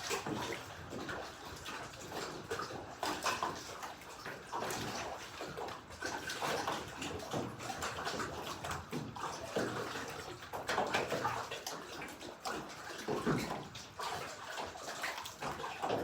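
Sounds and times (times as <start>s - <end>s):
water lapping and sloshing: 0.0s - 16.0s.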